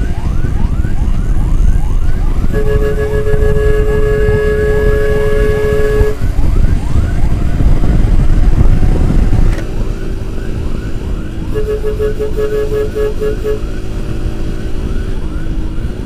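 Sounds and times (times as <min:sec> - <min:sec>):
road rumble: 0:00.0 - 0:16.0
wind on microphone: 0:00.0 - 0:16.0
steady tone: 0:02.0 - 0:08.7.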